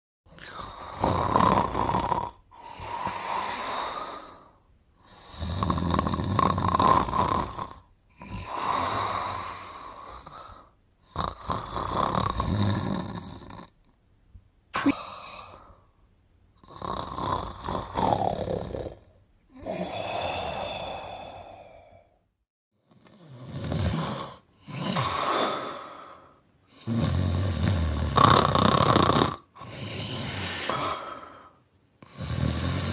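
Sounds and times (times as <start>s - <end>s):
man snoring: 0.3s - 13.8s, 14.8s - 15.8s, 16.6s - 22.2s, 22.8s - 32.9s.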